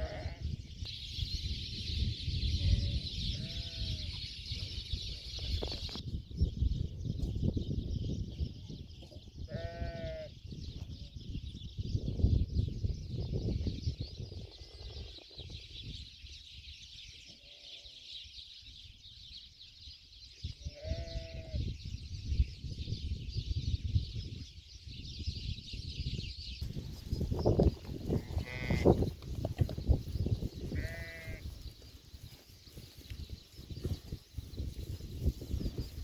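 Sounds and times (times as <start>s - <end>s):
sheep bleating: 0.0s - 0.4s, 2.7s - 4.1s, 9.5s - 10.3s, 28.2s - 29.0s, 30.7s - 31.4s.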